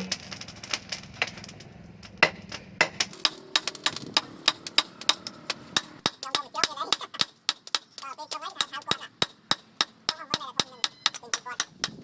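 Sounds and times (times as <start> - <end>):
hammer striking metal: 2.2 - 12.0.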